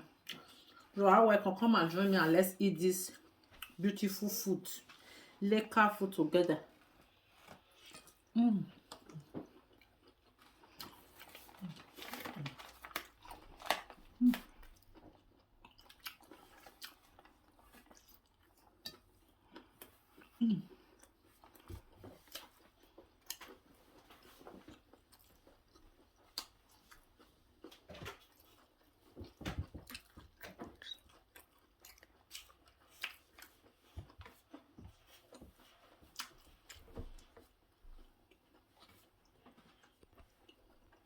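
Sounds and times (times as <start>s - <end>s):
person chewing: 0.0s - 1.0s, 6.8s - 41.0s.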